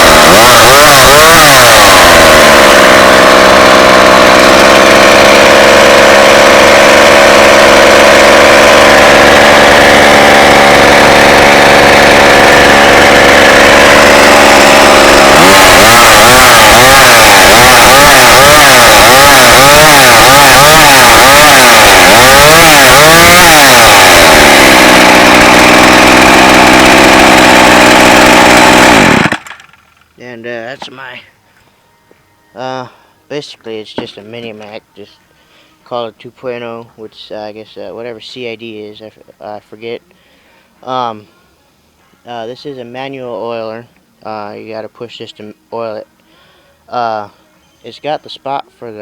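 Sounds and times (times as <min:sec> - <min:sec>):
chainsaw engine idling and revving: 0:00.0 - 0:31.2.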